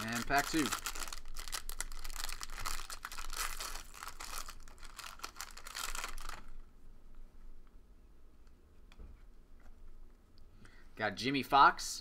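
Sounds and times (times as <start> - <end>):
wrapper tearing and crinkling: 0.0 - 6.6.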